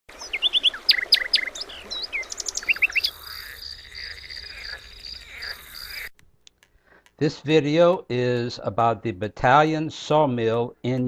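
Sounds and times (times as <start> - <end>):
birds chirping: 0.1 - 6.1.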